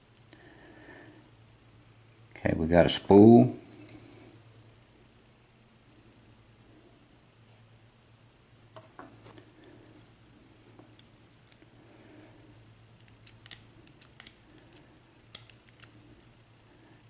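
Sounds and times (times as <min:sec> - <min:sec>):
small metal clicks of padlock pins: 0:13.0 - 0:16.4.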